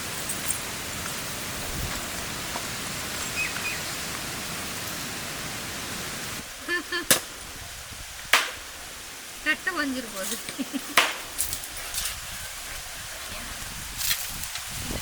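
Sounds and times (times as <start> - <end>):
steady hissing background noise: 0.0 - 15.0
sharp knock: 8.3 - 8.6.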